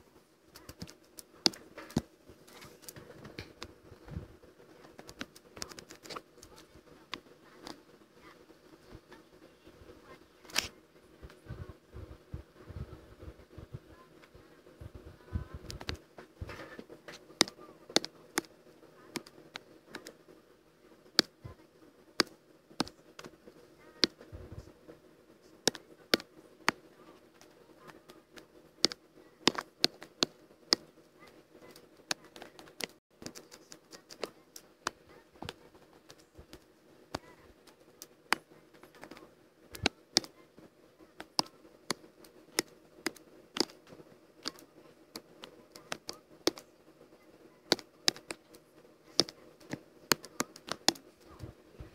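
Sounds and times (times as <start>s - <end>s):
faint steady hum: 0.0s - 51.9s
computer keyboard typing: 4.7s - 8.4s, 15.3s - 20.2s, 22.2s - 24.3s, 25.6s - 51.5s.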